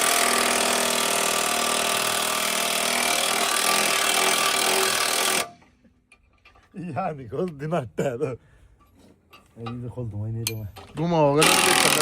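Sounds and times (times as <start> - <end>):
power tool running: 0.0 - 5.6, 11.4 - 12.0.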